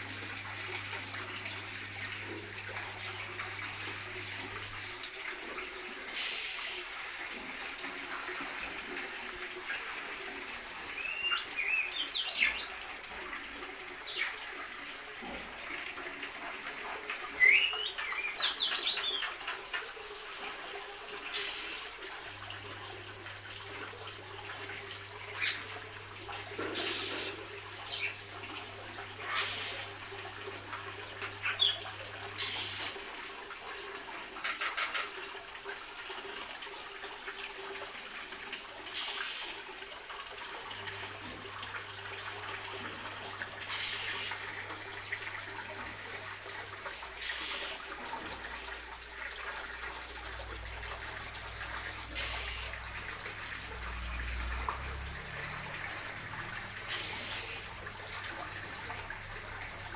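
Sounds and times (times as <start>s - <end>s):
birds chirping: 10.9s - 12.8s, 17.3s - 19.4s, 26.8s - 28.2s, 31.4s - 32.9s.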